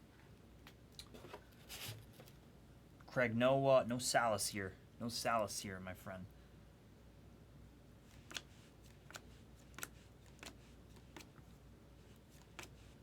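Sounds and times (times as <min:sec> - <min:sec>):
cards flipping with clicks: 0:08.1 - 0:11.4, 0:12.3 - 0:12.8.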